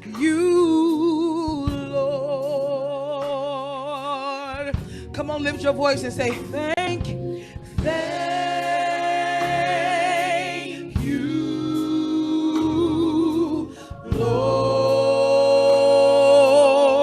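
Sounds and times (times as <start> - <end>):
gospel voices singing: 7.1 - 17.0.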